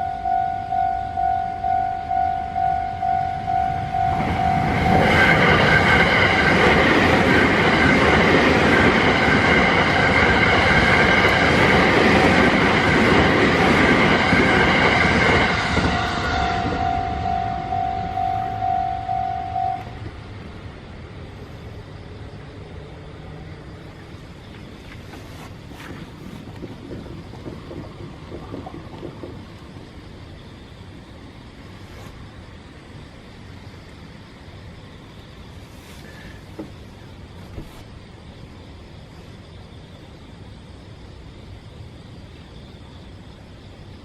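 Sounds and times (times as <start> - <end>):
level crossing warning bell: 0.0 - 6.8, 14.6 - 20.0
train passing at speed: 0.0 - 44.0.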